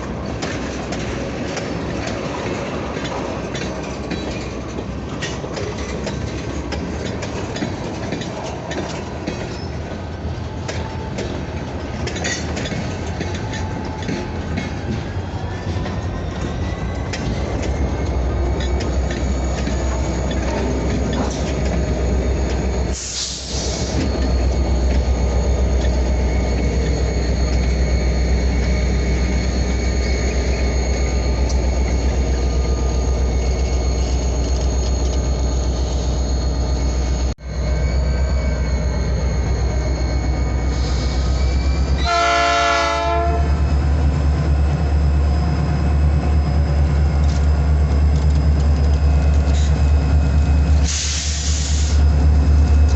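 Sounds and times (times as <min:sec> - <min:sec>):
diesel locomotive engine rumble: 0:00.0 - 0:52.9
high squealing tones: 0:16.0 - 0:42.1
locomotive horn blast: 0:42.0 - 0:43.6
air hiss: 0:50.8 - 0:52.0.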